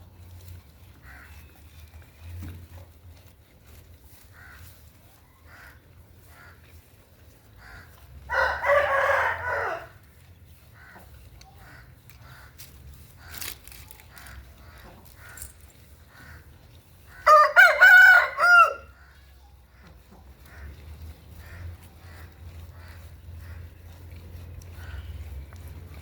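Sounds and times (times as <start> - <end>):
rooster crowing: 8.3 - 9.9, 17.2 - 18.9.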